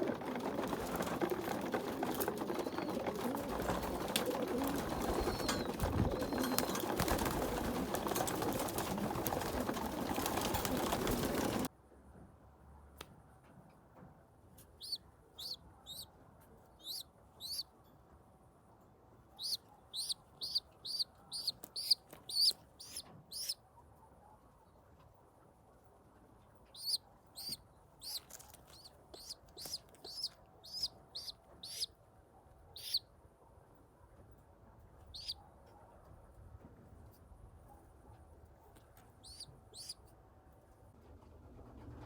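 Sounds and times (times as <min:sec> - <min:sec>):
pigeon squeaking: 0:03.9 - 0:07.2, 0:14.8 - 0:16.0, 0:16.8 - 0:17.6, 0:19.4 - 0:23.6, 0:26.8 - 0:31.9, 0:32.8 - 0:33.0, 0:35.2 - 0:35.4, 0:39.2 - 0:40.0.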